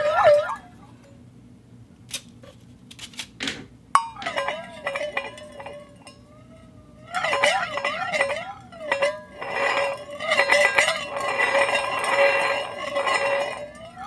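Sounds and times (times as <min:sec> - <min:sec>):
ball rolling in metal bowl: 0:00.0 - 0:01.2, 0:04.0 - 0:14.0
metal bowl ringing: 0:00.0 - 0:01.2, 0:04.0 - 0:14.0.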